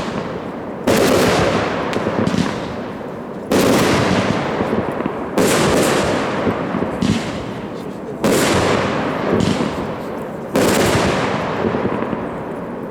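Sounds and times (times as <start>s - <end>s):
light firework pops: 0.0s - 12.7s
firework bursts with hiss: 3.5s - 12.2s.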